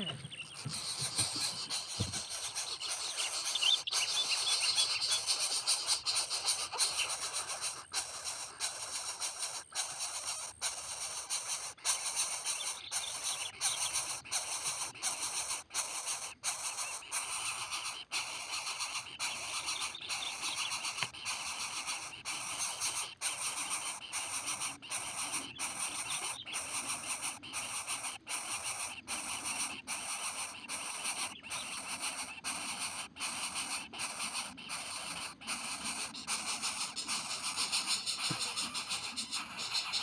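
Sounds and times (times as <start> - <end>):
faint bird chirps: 0.0 - 40.0
high-pitched outdoor hiss: 36.0 - 40.0.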